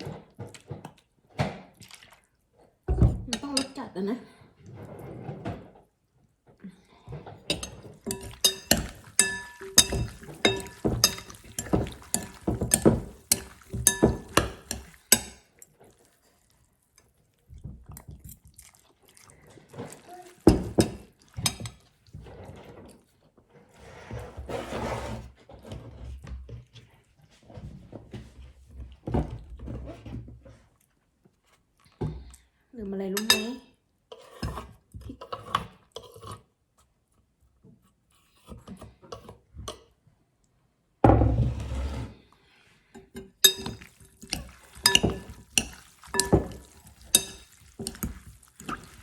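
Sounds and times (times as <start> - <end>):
kitchen clatter: 2.9 - 3.9, 7.1 - 15.8, 19.7 - 21.9, 43.0 - 49.0
utensils clinking against a bowl: 3.1 - 3.8, 7.4 - 15.7, 18.1 - 21.9, 33.2 - 36.4, 43.0 - 49.0.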